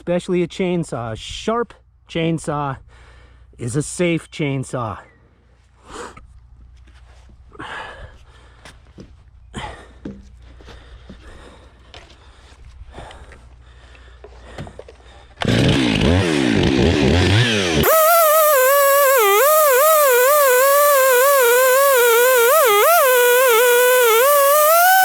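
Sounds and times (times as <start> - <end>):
chainsaw cutting a log: 15.4 - 25.0.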